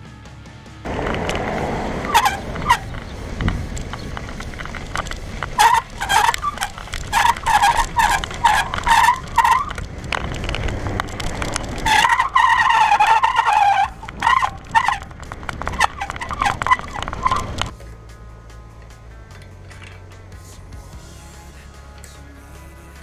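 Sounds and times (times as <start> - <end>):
low rumble: 0.8 - 22.0
bicycle brakes squealing: 1.3 - 17.7.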